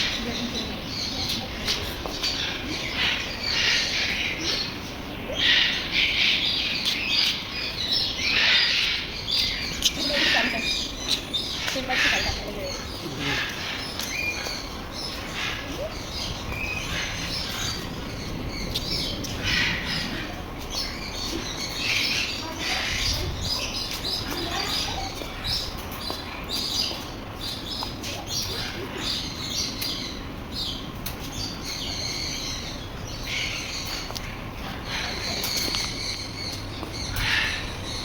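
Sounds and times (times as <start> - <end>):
birds fluttering: 0.0 - 38.0
small birds chirping: 0.0 - 38.0.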